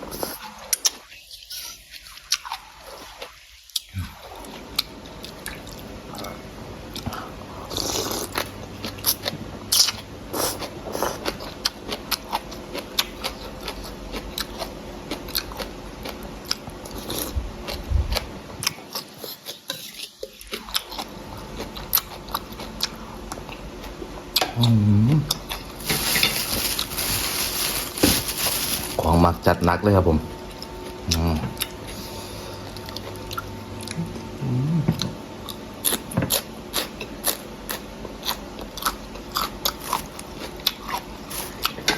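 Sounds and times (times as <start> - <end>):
person chewing and crunching food: 0.0 - 29.6, 30.5 - 41.9
person humming approval: 24.6 - 25.3, 34.0 - 35.1.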